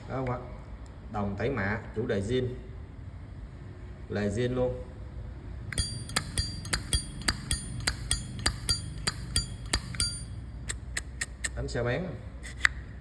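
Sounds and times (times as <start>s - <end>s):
lighter lid clicking open and shut: 5.8s - 11.6s.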